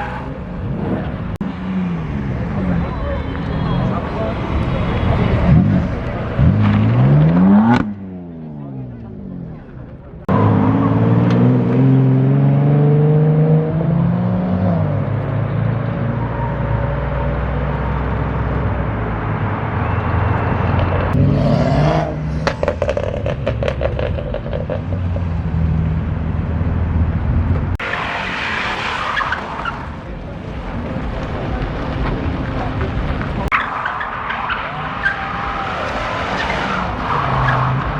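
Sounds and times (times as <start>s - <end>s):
car engines revving: 0.0s - 37.9s
tyre screech: 27.8s - 30.0s, 33.5s - 37.9s.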